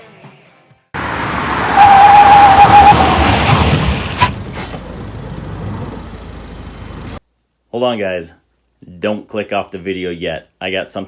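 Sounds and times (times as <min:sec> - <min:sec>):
off-road vehicle engine: 0:01.0 - 0:07.2
steady squeal: 0:01.5 - 0:04.9.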